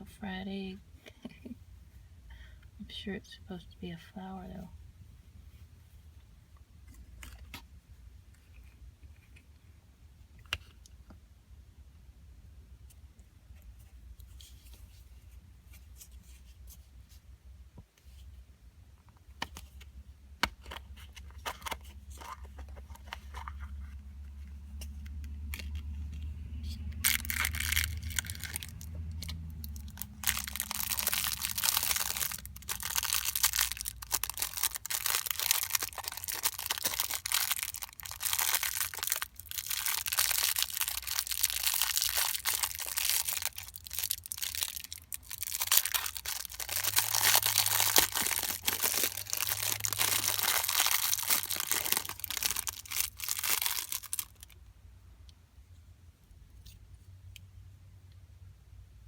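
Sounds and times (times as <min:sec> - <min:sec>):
plastic wrapper crinkling and tearing: 0:26.9 - 0:54.6.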